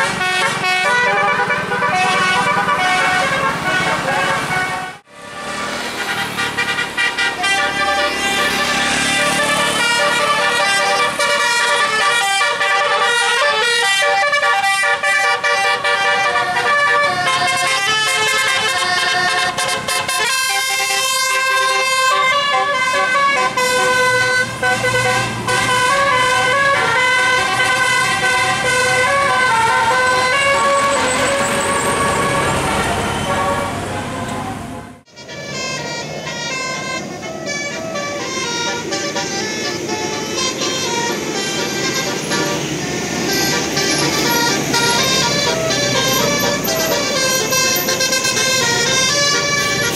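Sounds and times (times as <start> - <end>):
multi-tone air horn tune: 0.0 - 34.0, 35.0 - 49.9.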